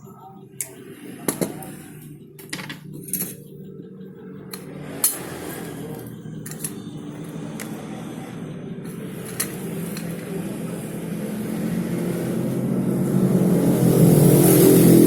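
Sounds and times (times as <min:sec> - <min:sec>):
steady low hum: 0:00.0 - 0:15.0
small tools clicking and tapping: 0:02.4 - 0:03.5, 0:04.5 - 0:06.8.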